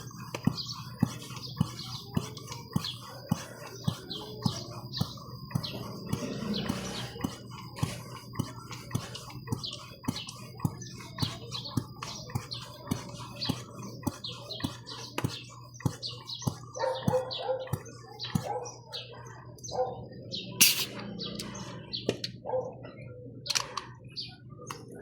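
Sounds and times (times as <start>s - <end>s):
hand air pump clicking: 0.0s - 18.5s
birds chirping: 0.0s - 25.0s.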